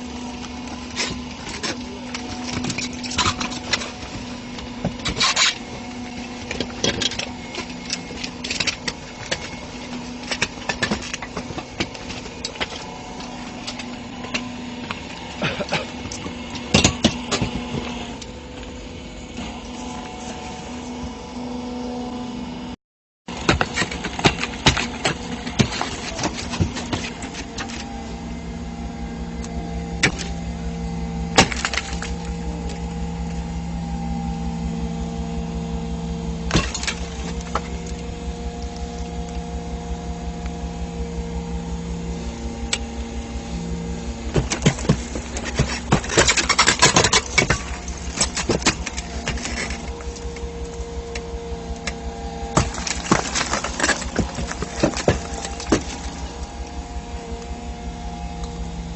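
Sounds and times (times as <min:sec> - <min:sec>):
hydraulic engine running under load: 0:00.0 - 0:58.9
concrete cracking: 0:29.4 - 0:30.5, 0:31.2 - 0:32.8, 0:36.4 - 0:39.4, 0:44.2 - 0:57.4.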